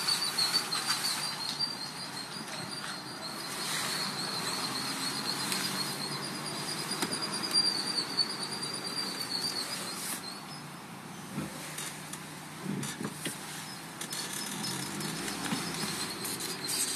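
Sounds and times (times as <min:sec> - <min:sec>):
high-pitched warbling whine: 0:00.0 - 0:10.5.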